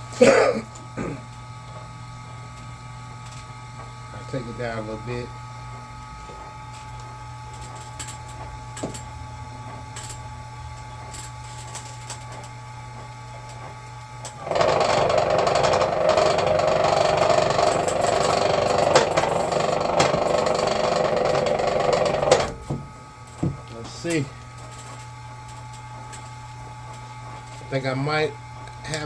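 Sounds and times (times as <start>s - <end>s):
machine low hum: 0.0s - 29.0s
rough mechanical noise: 14.2s - 28.3s.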